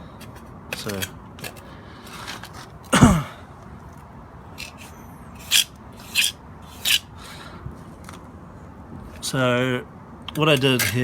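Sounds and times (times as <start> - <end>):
scrapes on concrete: 0.2 - 2.8, 4.6 - 7.1.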